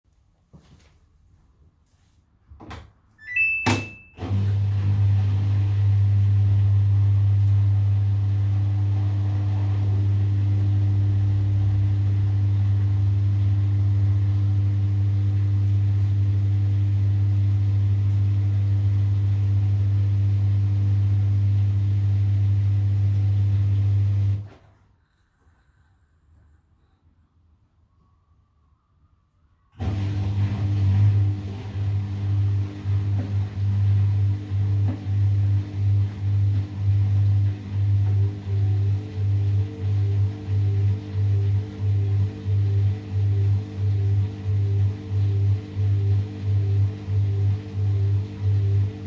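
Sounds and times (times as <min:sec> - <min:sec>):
short beep: 0:03.2 - 0:04.2
drain pump humming: 0:03.3 - 0:24.4, 0:29.8 - 0:49.0.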